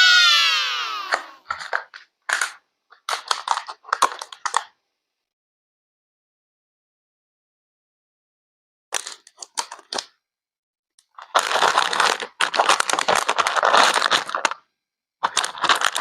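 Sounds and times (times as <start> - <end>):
crinkling handling noise: 1.4 - 4.8, 8.9 - 10.1, 11.0 - 16.0.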